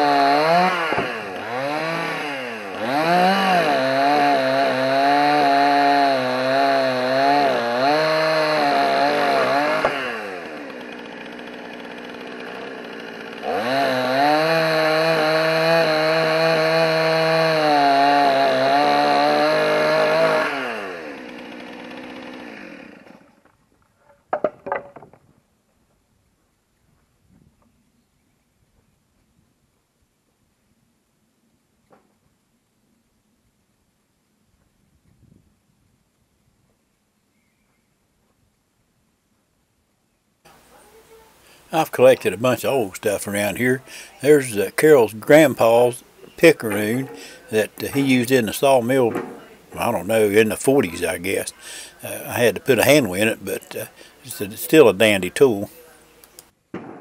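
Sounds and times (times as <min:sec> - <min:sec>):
chainsaw cutting wood: 0:00.0 - 0:25.3, 0:40.5 - 0:57.0.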